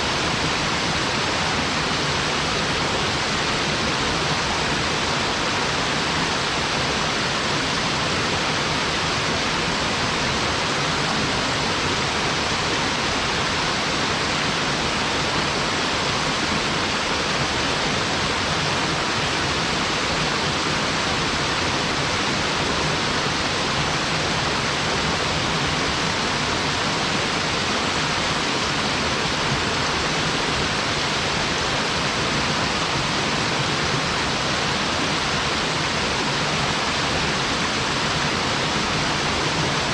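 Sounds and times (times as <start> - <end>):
small waterfall rushing: 0.0 - 39.9.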